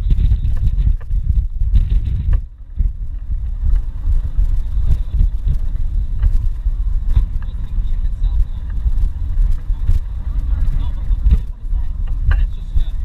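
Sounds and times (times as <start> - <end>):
moving vehicle rumble: 0.0 - 13.0
wind noise: 0.0 - 13.0.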